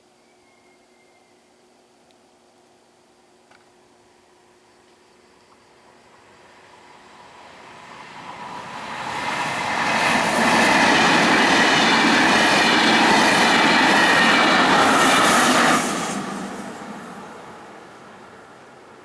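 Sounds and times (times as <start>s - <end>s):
electric train passing: 6.2s - 19.0s.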